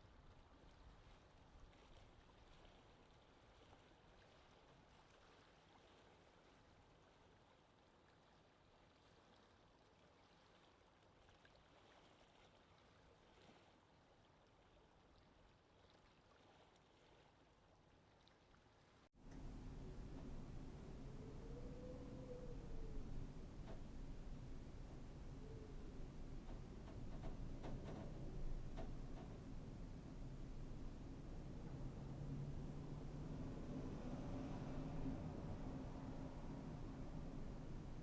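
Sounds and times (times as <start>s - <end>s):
faint wind rush: 19.2s - 38.0s.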